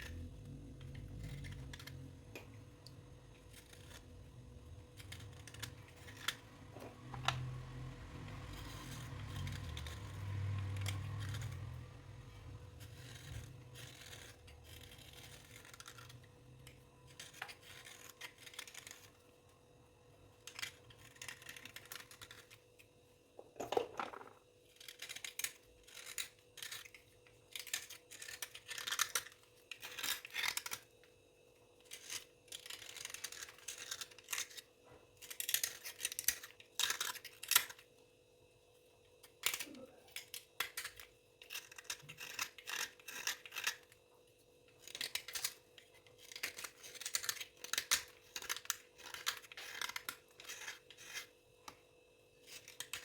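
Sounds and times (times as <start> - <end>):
dry scratchy scraping: 4.9 - 16.4.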